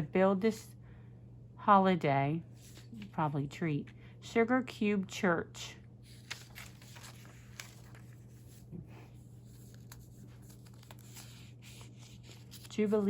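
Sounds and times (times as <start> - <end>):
steady low hum: 0.0 - 13.0
paper rustling: 2.6 - 3.2, 6.0 - 13.0.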